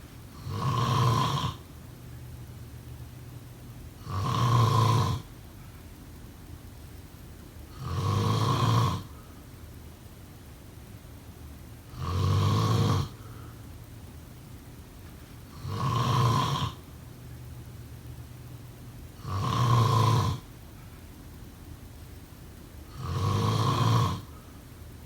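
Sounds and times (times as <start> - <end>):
person snoring: 0.4 - 1.6, 4.0 - 5.3, 7.7 - 9.2, 11.9 - 13.3, 15.5 - 16.8, 19.2 - 20.5, 22.9 - 24.4.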